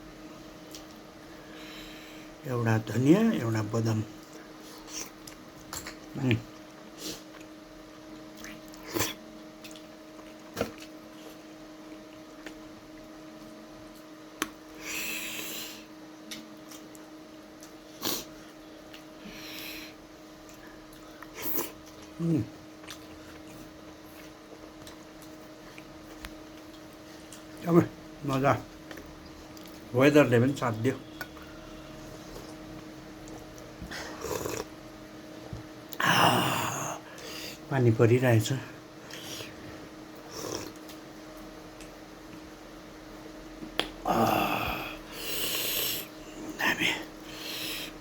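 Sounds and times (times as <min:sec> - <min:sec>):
steady hum: 0:00.0 - 0:48.0
eating sounds: 0:04.1 - 0:13.0, 0:16.3 - 0:27.6, 0:31.2 - 0:34.8, 0:39.0 - 0:42.4
man eating mouth noises: 0:04.2 - 0:07.5, 0:20.5 - 0:25.0, 0:33.2 - 0:34.8, 0:40.2 - 0:41.0.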